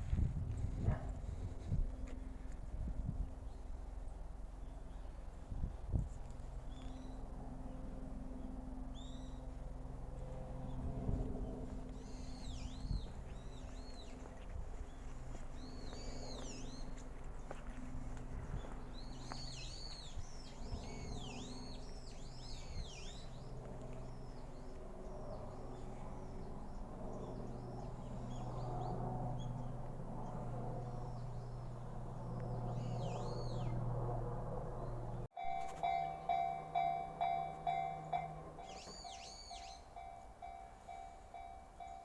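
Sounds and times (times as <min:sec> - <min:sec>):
steady low hum: 0:00.0 - 0:42.0
birds chirping: 0:08.4 - 0:09.6, 0:10.7 - 0:17.9, 0:18.5 - 0:29.7, 0:30.3 - 0:33.9, 0:34.8 - 0:42.0
level-crossing alarm ringing: 0:35.4 - 0:42.0.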